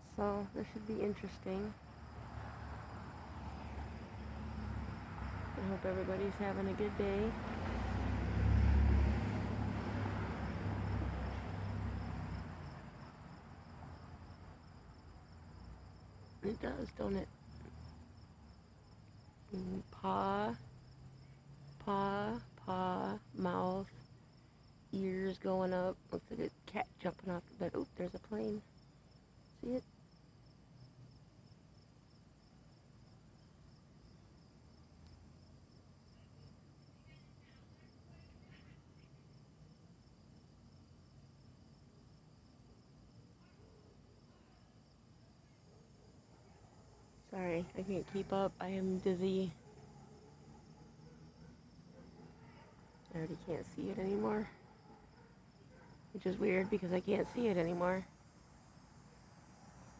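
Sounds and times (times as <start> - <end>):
insects chirping: 0.0 - 59.9
passing vehicle rumble: 1.4 - 18.2.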